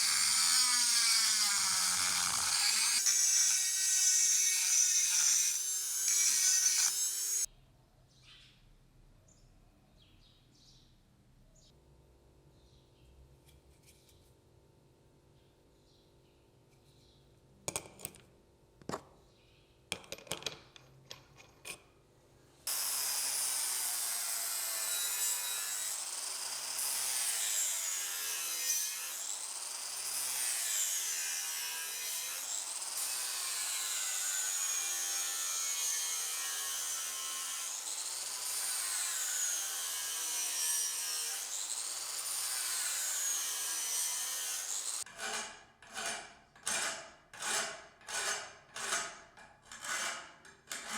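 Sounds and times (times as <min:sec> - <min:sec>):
power tool grinding steel blade: 0:00.0 - 0:07.5, 0:22.7 - 0:49.1, 0:49.7 - 0:50.9.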